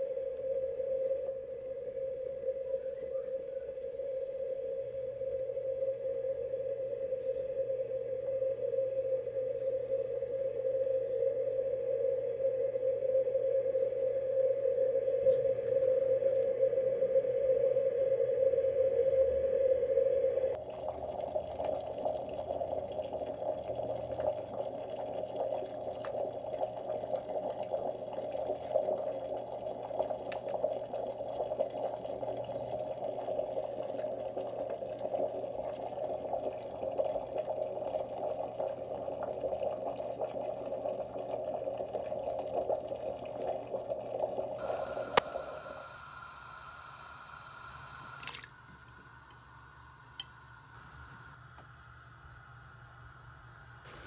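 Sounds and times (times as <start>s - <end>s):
faint high-pitched tone: 0.0s - 20.6s, 44.6s - 53.6s.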